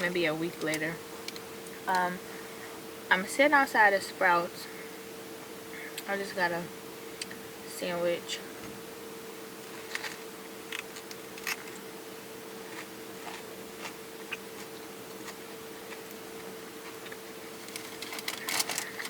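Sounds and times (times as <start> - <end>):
steady hum: 0.0 - 19.0
sandwich wrapping rustling: 16.8 - 19.0.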